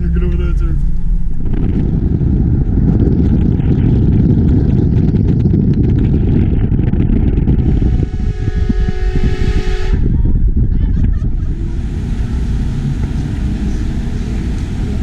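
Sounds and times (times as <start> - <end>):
wind and road noise: 0.0 - 15.0
train horn chord: 7.7 - 10.1.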